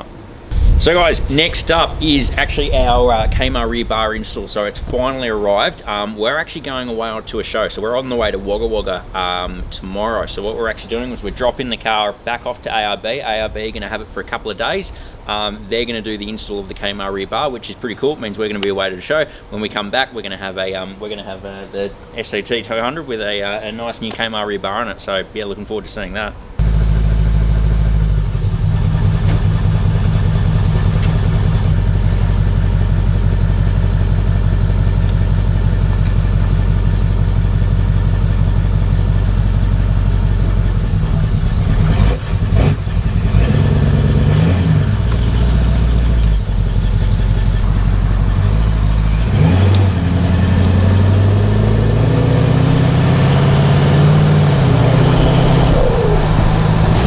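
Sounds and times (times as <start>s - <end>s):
vehicle engine and exhaust running: 0.4s - 3.8s, 26.6s - 57.0s.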